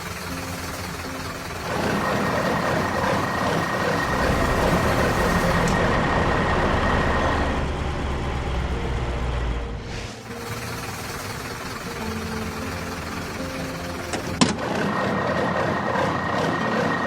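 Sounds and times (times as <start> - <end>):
heavy truck engine running: 0.0 - 17.0
high engine whine: 0.0 - 17.0
low rumble: 1.7 - 11.6.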